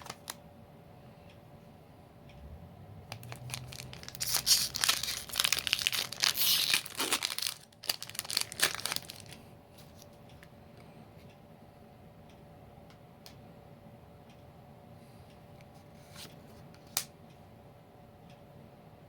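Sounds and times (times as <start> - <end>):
foil wrapper tearing and crinkling: 3.2 - 9.4.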